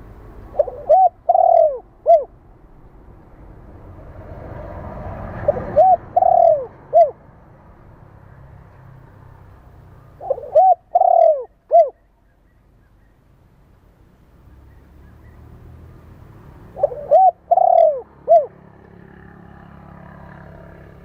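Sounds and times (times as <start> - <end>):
dove cooing: 0.5 - 2.4, 5.3 - 7.3, 10.1 - 12.0, 16.7 - 19.6.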